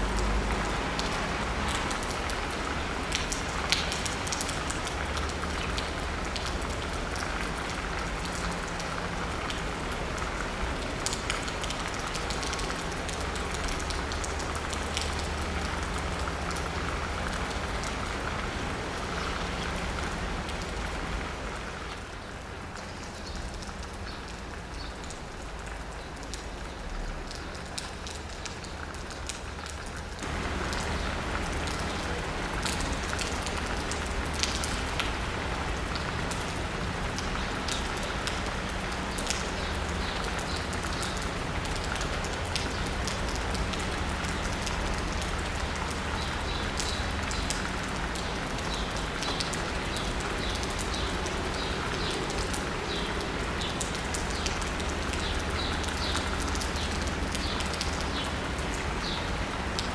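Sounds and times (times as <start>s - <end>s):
distant traffic rumble: 0.0s - 22.7s, 26.7s - 59.9s
rain pattering on asphalt and roof: 0.0s - 59.9s.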